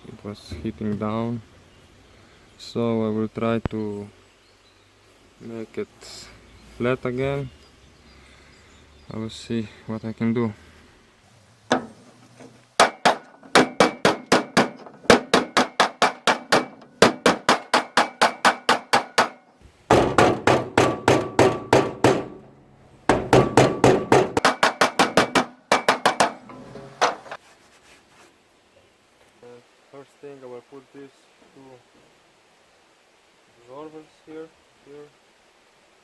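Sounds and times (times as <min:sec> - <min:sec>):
hammer striking steel: 0:12.8 - 0:27.3.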